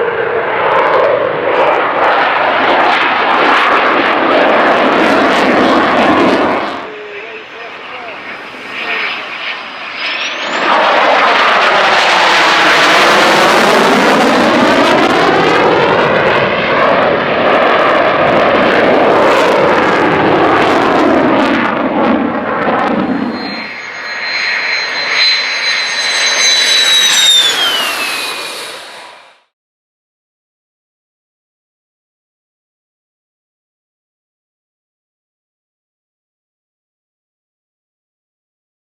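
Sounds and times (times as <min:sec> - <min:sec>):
high turbine whine: 0:00.0 - 0:29.5
jet engine roar: 0:00.0 - 0:29.5.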